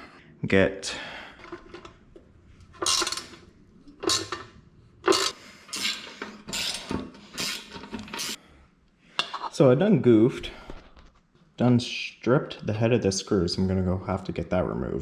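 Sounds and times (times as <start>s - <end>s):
screwdriver ratcheting rasps: 5.1s - 8.4s.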